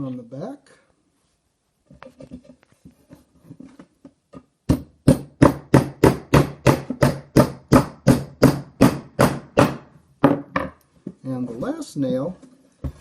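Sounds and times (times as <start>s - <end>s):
hammer hitting nail into wood: 4.7s - 10.8s.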